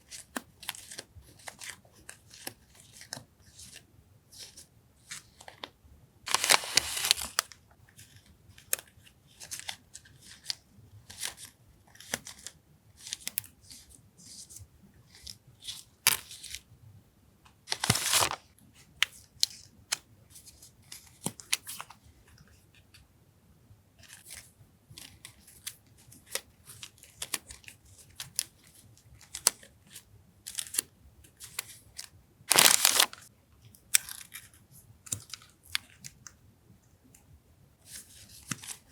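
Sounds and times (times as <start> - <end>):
packaging crinkling: 6.3 - 7.5, 17.7 - 18.4, 32.5 - 33.2.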